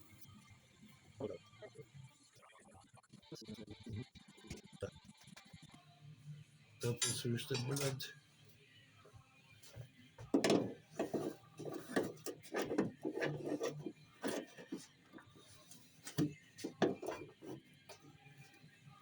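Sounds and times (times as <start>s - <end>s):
hands rubbing and scraping parts: 9.7s - 18.6s.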